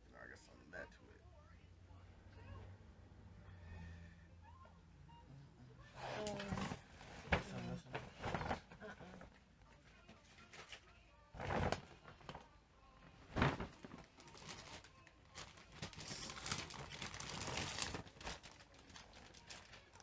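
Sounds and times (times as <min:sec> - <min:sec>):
packaging rustling and crackling: 0:10.3 - 0:12.5, 0:13.2 - 0:20.0.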